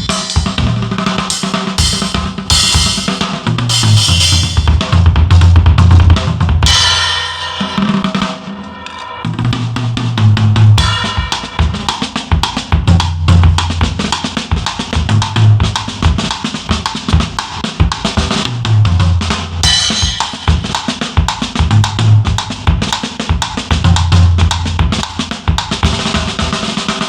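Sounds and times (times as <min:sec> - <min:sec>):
drum kit groove: 0:00.0 - 0:27.0
cymbal crash: 0:01.4 - 0:04.7, 0:06.7 - 0:09.3.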